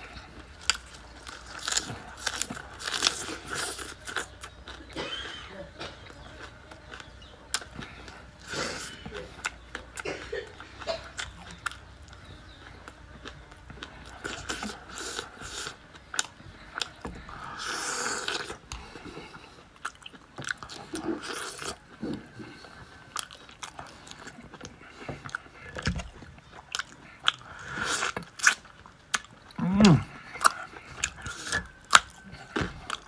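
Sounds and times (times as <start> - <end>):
person chewing crunchy food: 0.0 - 33.0.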